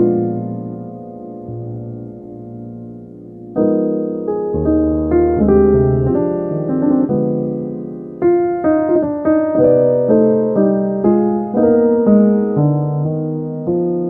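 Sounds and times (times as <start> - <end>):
gentle piano music: 0.0 - 14.0.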